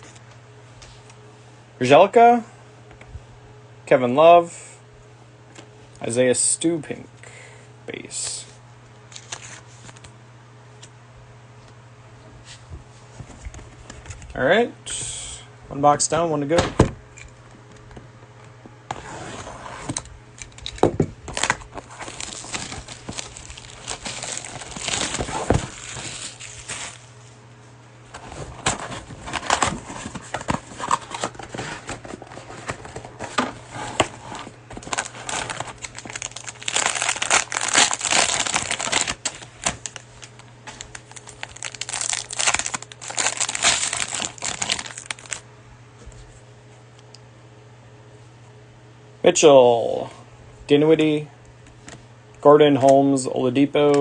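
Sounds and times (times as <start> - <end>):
cellophane crinkling and tearing: 9.1 - 10.0, 20.5 - 27.1, 28.2 - 45.4.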